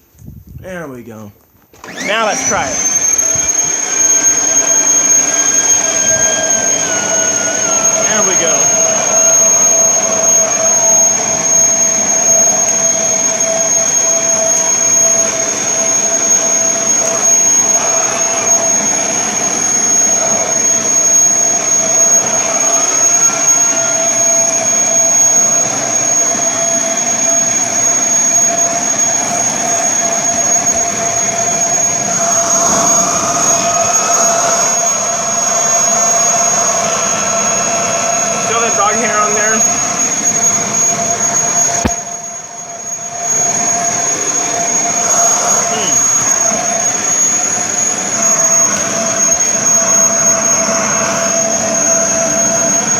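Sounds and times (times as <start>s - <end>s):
vacuum cleaner whining: 1.6s - 52.9s.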